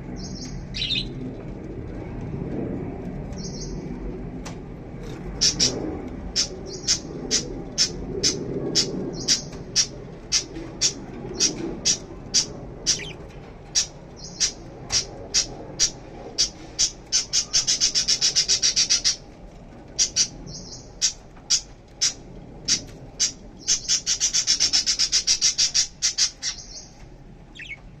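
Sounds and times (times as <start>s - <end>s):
lovebirds chirping: 5.4s - 19.2s, 20.0s - 27.9s.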